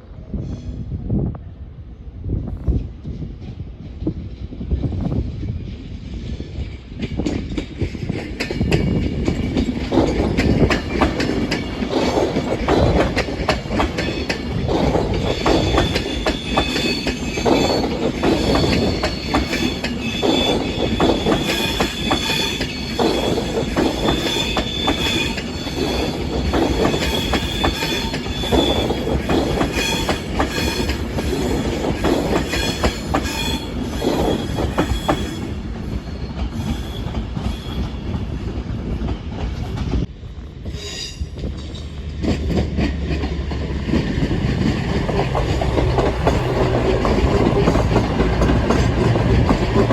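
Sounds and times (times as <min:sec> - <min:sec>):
train wheels clattering: 0:02.7 - 0:40.1, 0:41.2 - 0:49.9
high-pitched wheel squeal: 0:15.0 - 0:26.2, 0:26.9 - 0:31.0, 0:32.4 - 0:38.0.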